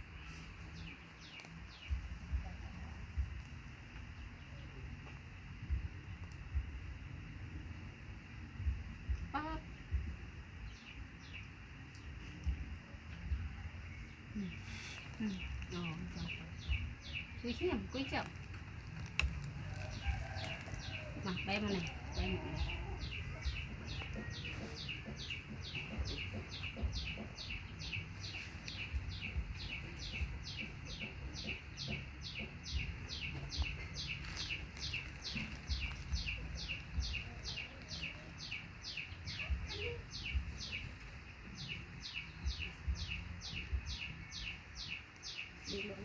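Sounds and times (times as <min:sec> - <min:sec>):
low rumble: 0:01.6 - 0:44.9
bird chirping: 0:13.5 - 0:18.3, 0:19.6 - 0:46.0.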